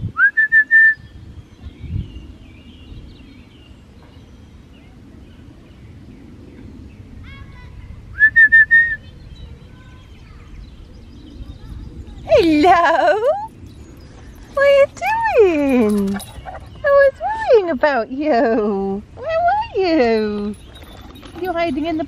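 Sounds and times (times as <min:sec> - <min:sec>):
steady low rumble: 0:01.1 - 0:22.0
high whistle-like chirps: 0:08.2 - 0:09.1.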